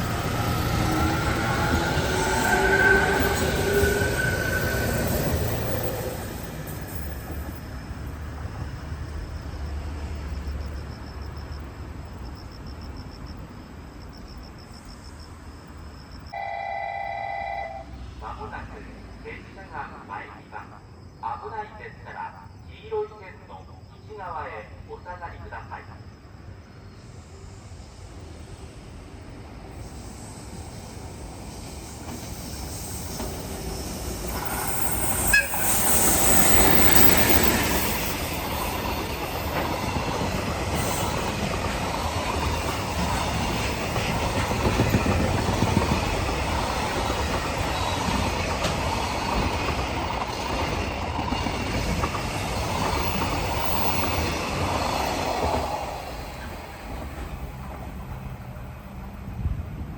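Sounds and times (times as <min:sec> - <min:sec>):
train wheels clattering over rails: 0:30.6 - 0:58.4.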